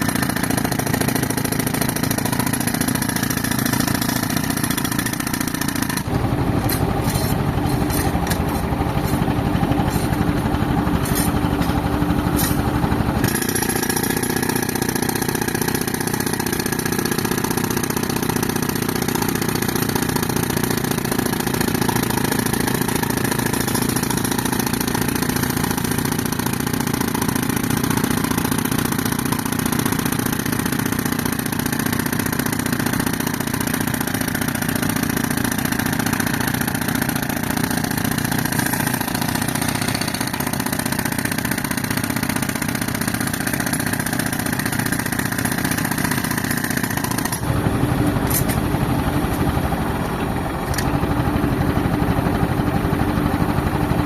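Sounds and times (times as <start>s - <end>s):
tractor engine running: 0.0s - 54.0s.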